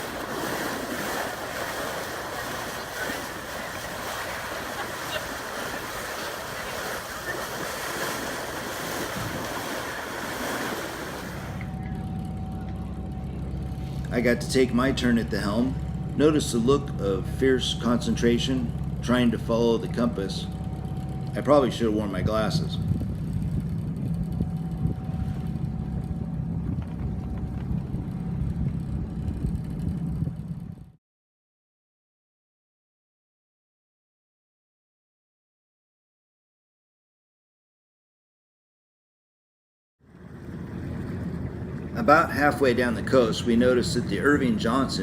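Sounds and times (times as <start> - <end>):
wind on microphone: 0.0 - 11.6, 22.6 - 31.0
rushing sea water: 0.0 - 11.7
ship engine low drone: 0.0 - 31.0, 40.0 - 45.0
steady low hum: 0.0 - 31.0, 40.1 - 45.0
faint higher tone: 11.5 - 14.2.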